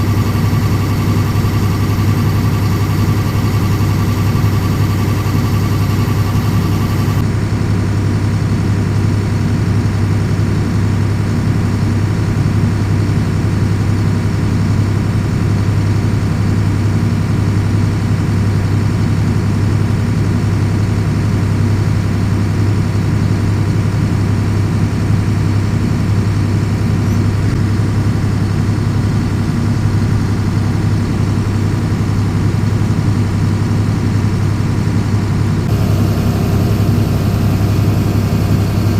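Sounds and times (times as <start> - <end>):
diesel engine running under load: 0.0 - 38.9
high whine and hiss: 35.7 - 38.9.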